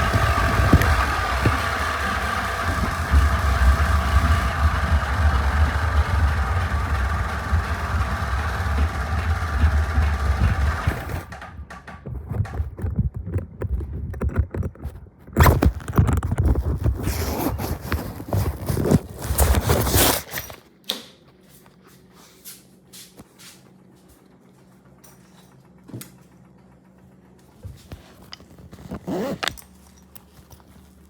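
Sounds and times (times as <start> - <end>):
lawnmower engine running: 0.0 - 12.1
knocks and clatter: 0.0 - 17.1.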